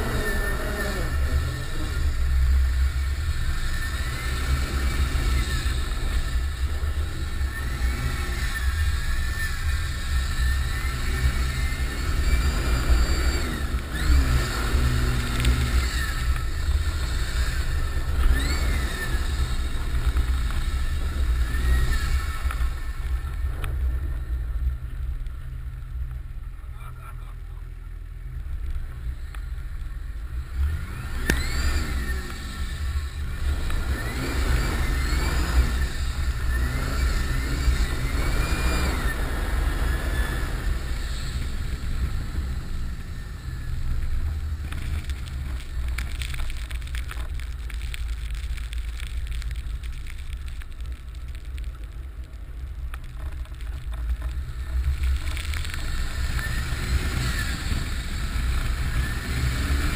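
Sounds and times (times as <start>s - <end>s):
diesel engine revving: 0.0s - 23.5s, 30.3s - 47.8s, 54.5s - 59.9s
rough crackly rattling: 0.0s - 27.6s, 28.2s - 59.9s.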